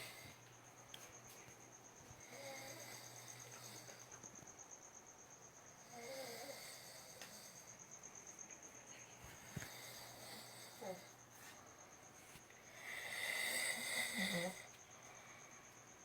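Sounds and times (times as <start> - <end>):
faint snoring: 0.0 - 0.4, 2.2 - 4.2, 5.8 - 7.9, 9.4 - 11.2, 12.6 - 14.8
high insect trill: 0.0 - 16.0.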